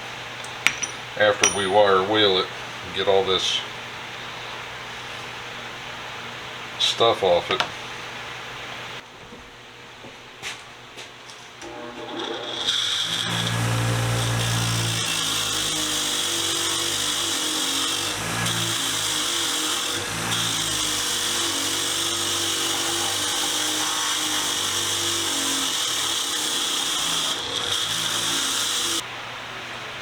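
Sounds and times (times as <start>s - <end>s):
wire wheel scouring metal: 11.6s - 29.0s.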